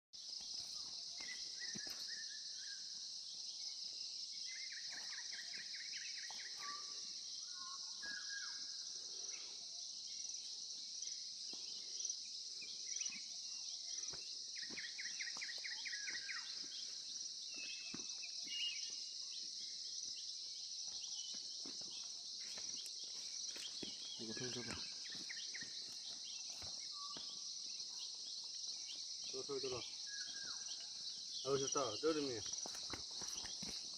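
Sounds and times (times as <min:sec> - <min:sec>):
high-pitched insect chorus: 0:00.2 - 0:33.9
trilling bird calls: 0:04.5 - 0:08.9.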